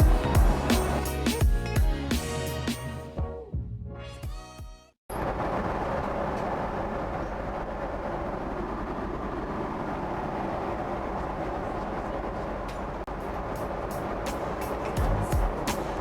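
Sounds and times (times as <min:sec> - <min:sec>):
music: 0:00.0 - 0:05.0, 0:13.9 - 0:16.0
airplane cabin roar: 0:05.1 - 0:16.0.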